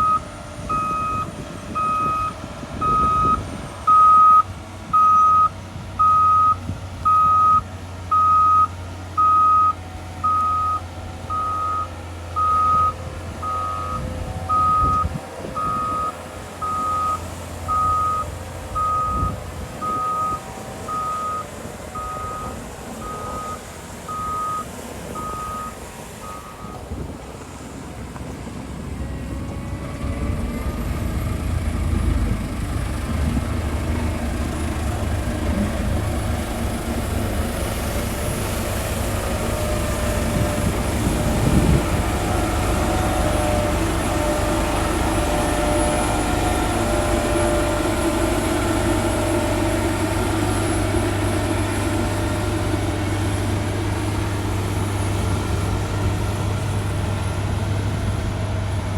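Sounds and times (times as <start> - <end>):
back-up alarm beeping: 0.0 - 26.8
diesel engine running: 0.0 - 58.9.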